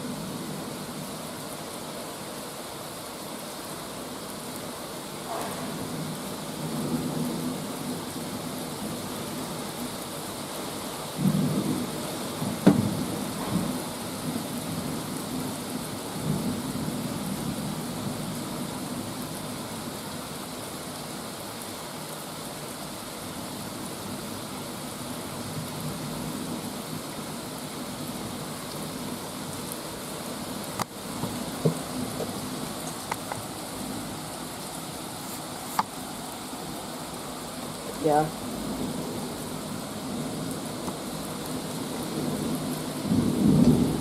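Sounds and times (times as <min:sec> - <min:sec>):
steady rain: 0:00.0 - 0:44.0
rumble of thunder: 0:11.2 - 0:19.2, 0:38.0 - 0:44.0.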